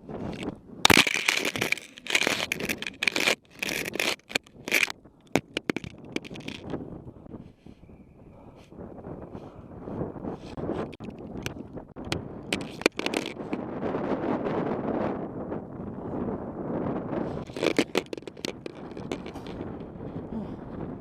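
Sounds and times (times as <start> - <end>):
wind buffeting microphone: 0.0 - 21.0
skis scraping on hard snow: 0.2 - 6.6, 12.5 - 13.6, 17.4 - 19.8
sharp clacks: 0.3 - 6.8, 10.8 - 13.6, 17.4 - 19.8.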